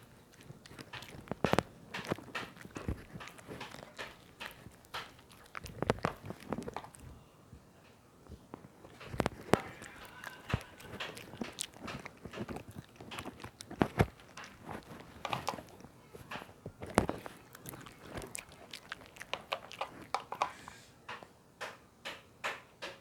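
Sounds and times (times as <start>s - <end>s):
dog chewing and crunching food: 0.0s - 7.3s, 7.9s - 21.3s.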